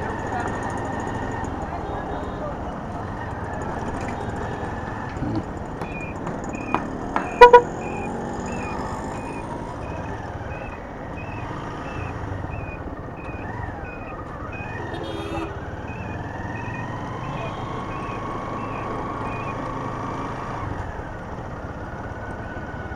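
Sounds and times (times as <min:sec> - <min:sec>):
road traffic noise: 0:00.0 - 0:22.9
horn toots: 0:01.6 - 0:09.7, 0:13.4 - 0:19.5
short high beeps: 0:05.9 - 0:09.4.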